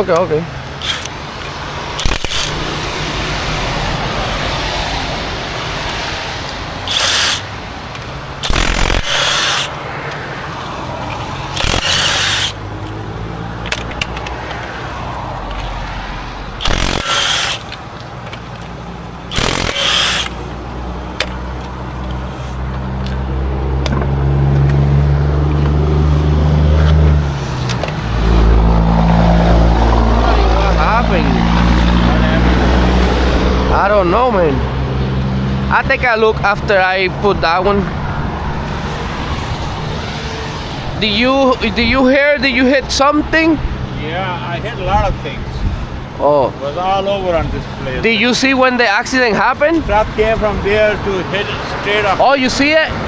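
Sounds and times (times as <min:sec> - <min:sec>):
low engine hum: 0:00.0 - 0:41.0
highway traffic noise: 0:00.0 - 0:53.0
impact wrench bursts: 0:00.5 - 0:04.7, 0:05.5 - 0:23.5.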